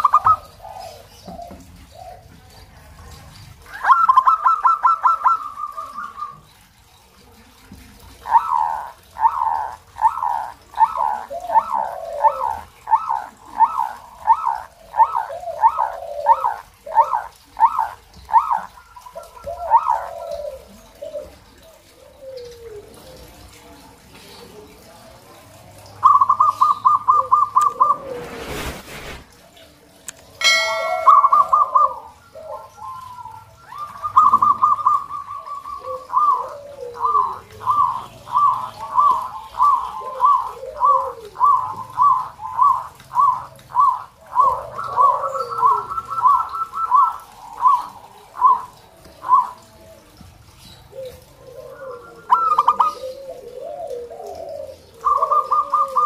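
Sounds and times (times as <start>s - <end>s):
doves cooing: 0.0s - 28.6s, 30.4s - 56.0s
brief rushing noise: 27.8s - 29.4s
lower warbling coos: 30.4s - 50.2s.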